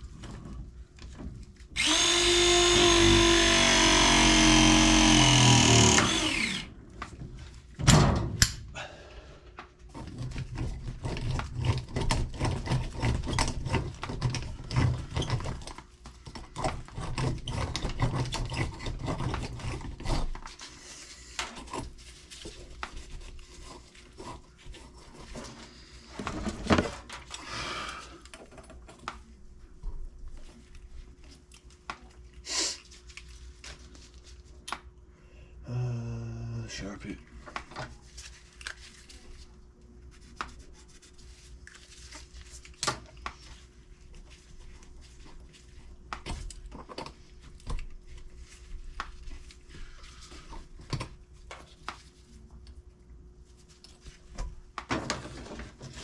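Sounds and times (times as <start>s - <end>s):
clicks and rattles of plumbing work: 9.6s - 20.6s.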